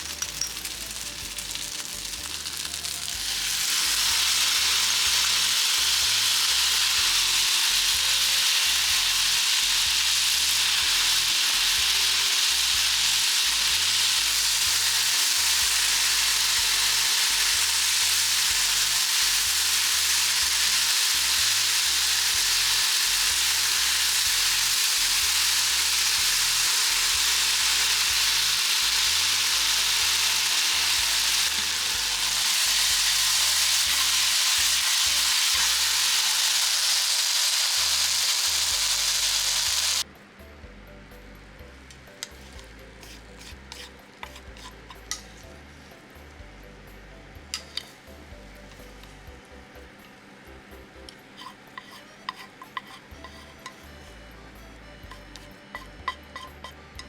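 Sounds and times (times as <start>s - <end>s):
vegetables sizzling in a pan: 0.0s - 40.0s.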